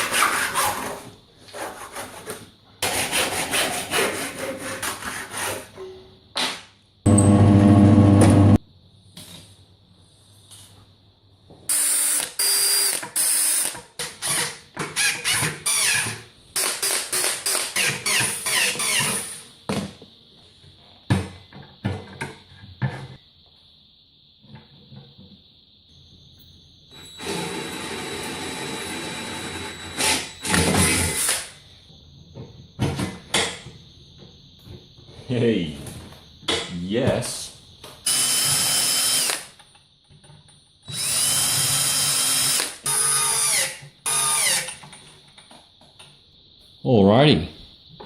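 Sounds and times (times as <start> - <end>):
power drill running: 7.1 - 8.6, 11.7 - 14.4, 27.0 - 31.4, 38.1 - 39.4, 40.9 - 44.7.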